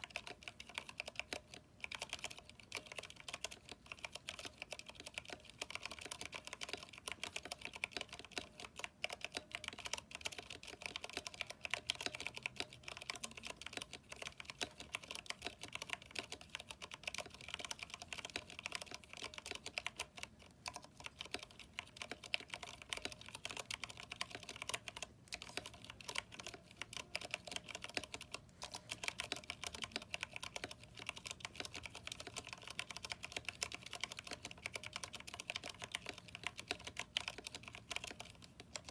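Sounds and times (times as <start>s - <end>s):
fast mechanical keyboard typing: 0.0s - 38.9s.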